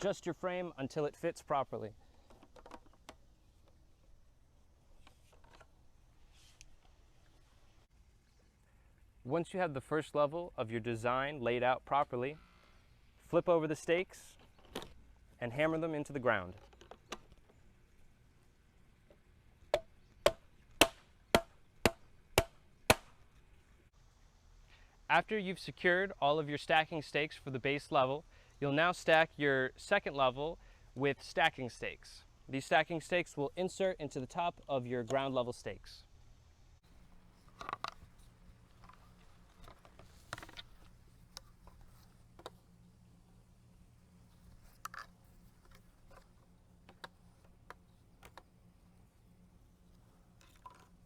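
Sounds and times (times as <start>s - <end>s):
plastic parts clicking and knocking: 2.2s - 3.8s, 36.9s - 51.0s
hammer knocking stake: 19.7s - 23.1s
low steady hum: 33.6s - 51.0s.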